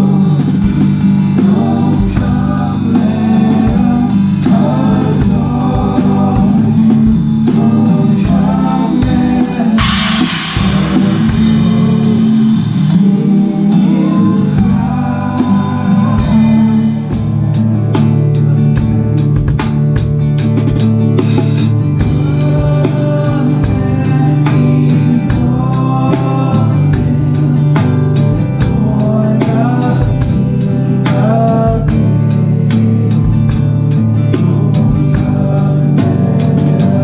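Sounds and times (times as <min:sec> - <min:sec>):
person singing: 0:00.0 - 0:17.6, 0:22.0 - 0:33.4
live band playing gospel song: 0:00.0 - 0:37.0
cymbal crash: 0:09.8 - 0:14.8.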